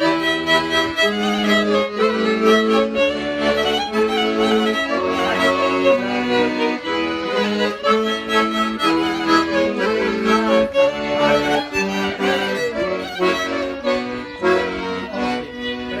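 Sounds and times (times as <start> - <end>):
accordion playing folk tune: 0.0 - 16.0
violin: 0.0 - 16.0.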